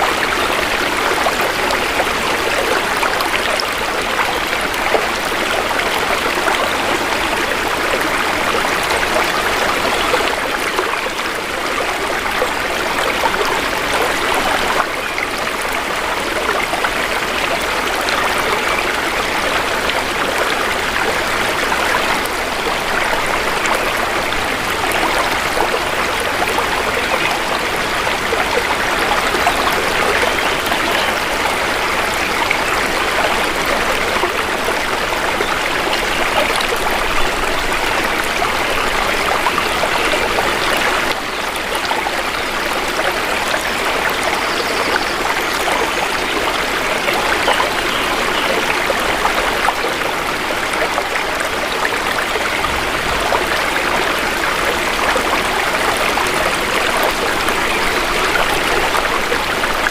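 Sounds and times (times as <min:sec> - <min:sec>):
river water babbling: 0:00.0 - 0:59.9.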